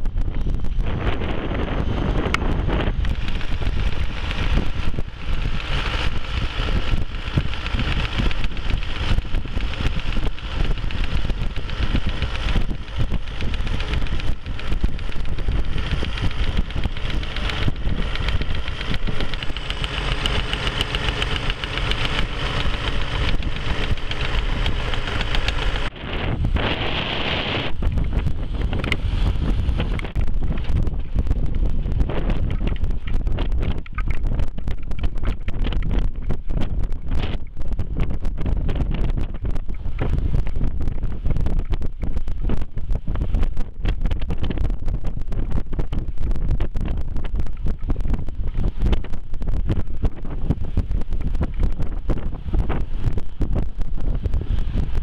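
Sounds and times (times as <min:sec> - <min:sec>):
snow blower clearing snow: 0:00.0 - 0:55.0
tractor diesel engine running: 0:00.1 - 0:37.6.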